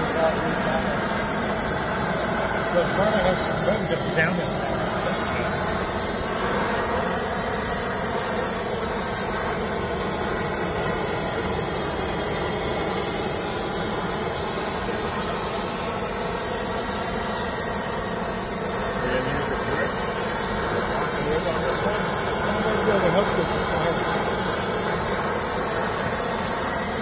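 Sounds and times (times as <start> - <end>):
torch flame hissing: 0.0 - 27.0.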